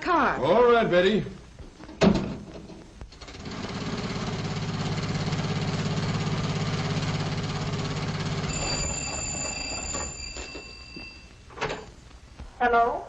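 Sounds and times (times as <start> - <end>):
thin high ringing tone: 8.4 - 11.9.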